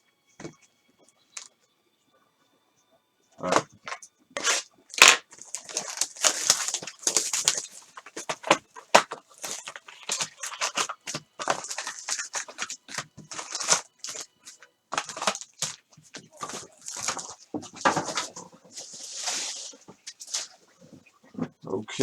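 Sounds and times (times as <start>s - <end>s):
cards shuffling: 3.4s - 21.0s
plastic foil crinkling and tearing: 3.4s - 21.0s.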